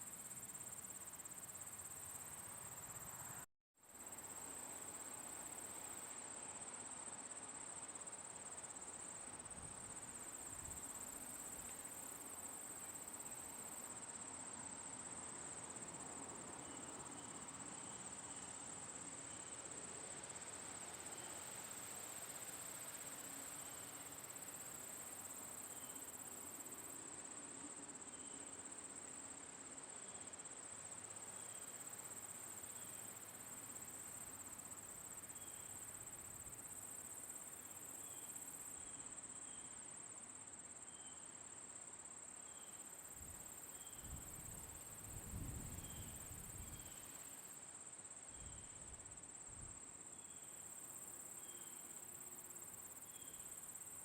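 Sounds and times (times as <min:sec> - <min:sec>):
crickets chirping: 0:00.0 - 0:54.0
faint even hiss: 0:42.7 - 0:54.0.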